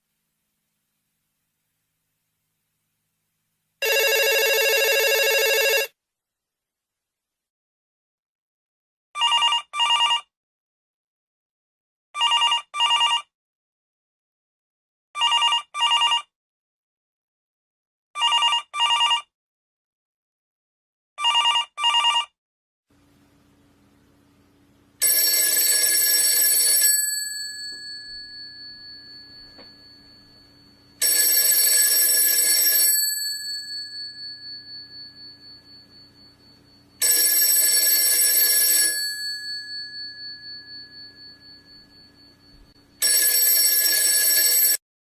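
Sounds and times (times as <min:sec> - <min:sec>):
telephone bell ringing: 0:03.8 - 0:06.0, 0:09.2 - 0:10.3, 0:12.2 - 0:13.3, 0:15.2 - 0:16.2, 0:18.2 - 0:19.3, 0:21.2 - 0:22.3, 0:25.0 - 0:44.8.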